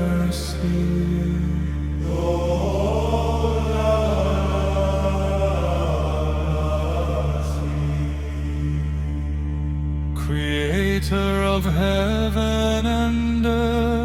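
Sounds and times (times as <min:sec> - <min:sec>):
choral singing: 0:00.0 - 0:09.7
low drone: 0:00.0 - 0:14.0.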